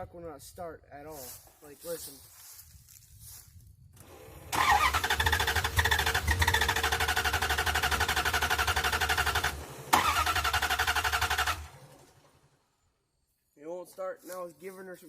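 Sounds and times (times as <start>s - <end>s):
truck starter cranking engine: 4.0s - 12.6s.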